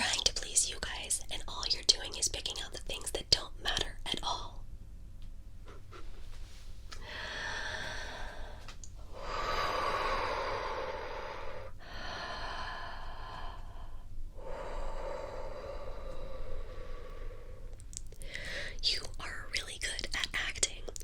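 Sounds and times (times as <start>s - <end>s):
deep human breathing: 5.8s - 18.8s.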